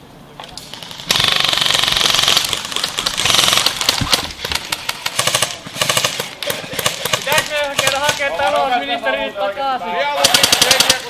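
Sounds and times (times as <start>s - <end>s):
airsoft rifles firing full auto: 0.6s - 8.3s, 10.2s - 11.0s.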